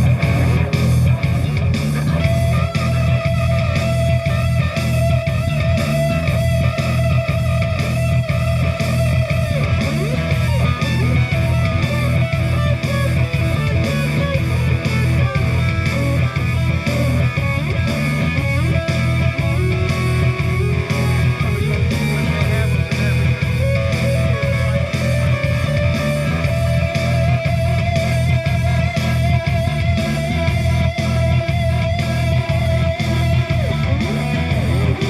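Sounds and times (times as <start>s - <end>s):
live heavy rock band: 0.0s - 35.0s.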